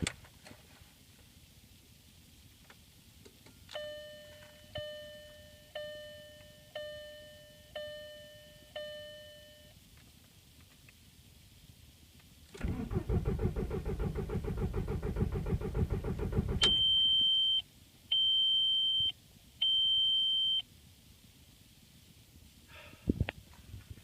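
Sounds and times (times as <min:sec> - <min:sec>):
dashboard warning beeps: 0:03.8 - 0:09.7, 0:16.6 - 0:20.6
starter cranking engine: 0:12.6 - 0:16.7.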